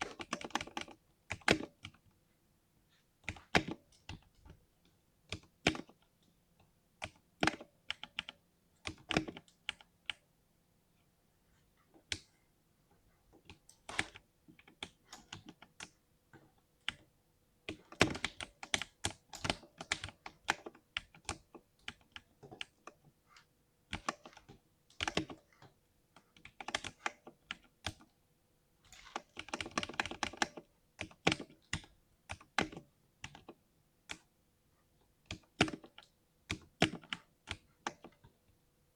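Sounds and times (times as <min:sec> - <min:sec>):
mechanical keyboard typing: 0:00.0 - 0:02.0, 0:17.7 - 0:23.0, 0:23.9 - 0:25.5, 0:26.4 - 0:28.1, 0:28.9 - 0:34.3, 0:35.3 - 0:38.2.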